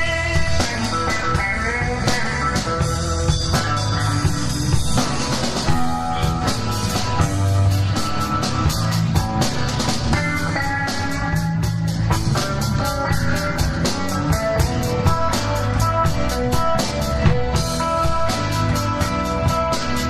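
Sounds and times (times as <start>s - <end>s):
bass guitar: 0.0s - 20.0s
electric guitar: 0.0s - 20.0s
drum kit beat: 11.4s - 19.7s.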